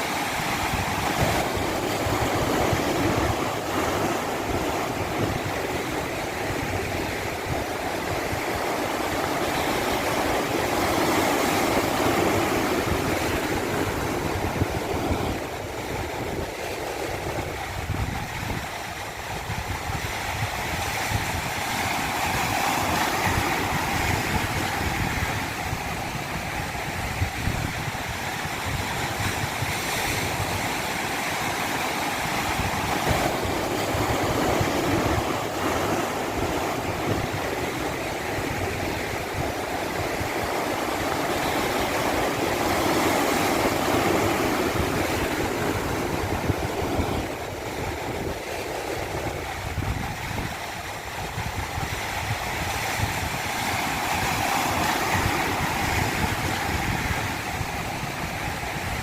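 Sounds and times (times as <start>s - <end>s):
water rushing: 0.0s - 59.0s.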